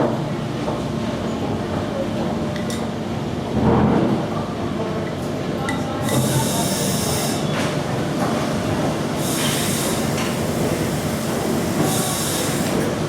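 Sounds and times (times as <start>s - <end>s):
steam hissing: 6.0s - 7.5s, 8.1s - 13.0s
steam engine churning and clanking: 6.0s - 13.0s.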